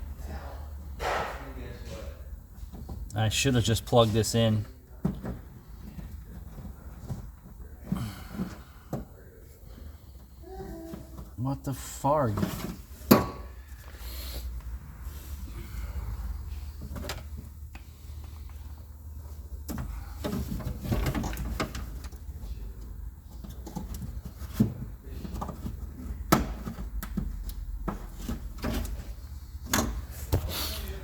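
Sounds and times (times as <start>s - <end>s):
clicks and rattles inside car door: 23.3s - 30.4s.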